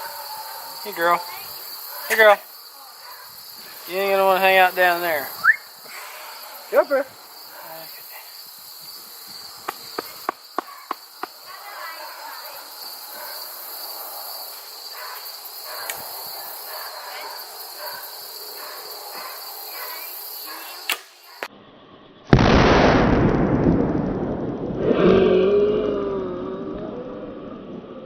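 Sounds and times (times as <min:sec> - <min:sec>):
crickets and insects droning: 0:00.0 - 0:22.4
sharp crack: 0:20.8 - 0:21.5, 0:22.3 - 0:25.3
explosive blast: 0:22.3 - 0:25.5.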